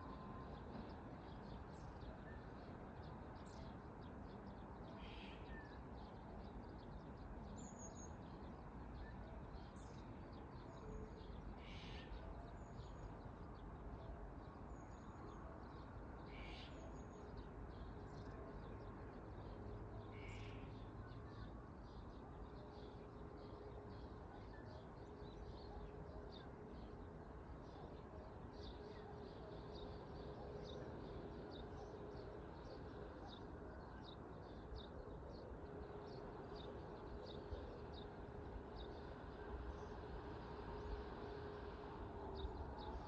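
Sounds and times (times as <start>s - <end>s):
faint high bird chirps: 5.0s - 5.8s.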